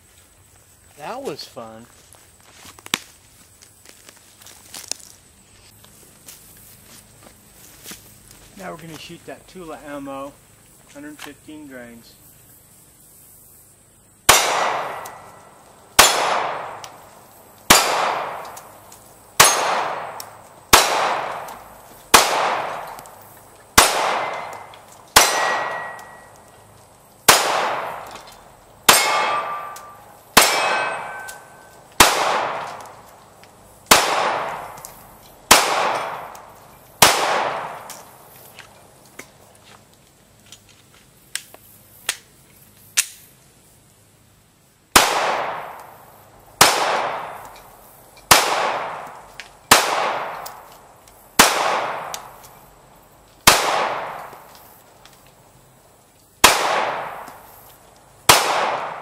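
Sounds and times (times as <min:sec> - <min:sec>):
pistol shots: 0:14.3 - 0:15.4, 0:16.0 - 0:17.0, 0:17.7 - 0:18.6, 0:19.4 - 0:23.0, 0:23.8 - 0:26.3, 0:27.3 - 0:28.2, 0:28.9 - 0:32.9, 0:33.9 - 0:34.9, 0:35.5 - 0:36.4, 0:37.0 - 0:37.8, 0:44.9 - 0:45.8, 0:46.6 - 0:47.5, 0:48.3 - 0:49.1, 0:49.7 - 0:50.7, 0:51.4 - 0:52.3, 0:53.4 - 0:54.4, 0:56.4 - 0:57.4, 0:58.3 - 0:59.0.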